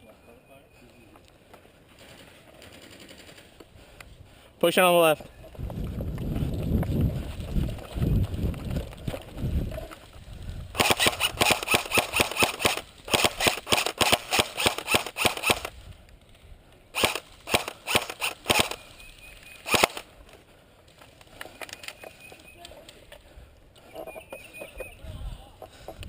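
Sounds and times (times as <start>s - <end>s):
airsoft gun shots: 10.8s - 15.7s, 17.0s - 18.8s, 19.7s - 20.0s.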